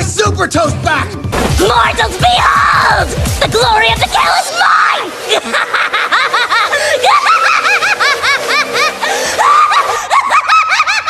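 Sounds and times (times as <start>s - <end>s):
background music: 0.0s - 11.0s
high-pitched cackling laughter: 5.3s - 11.0s.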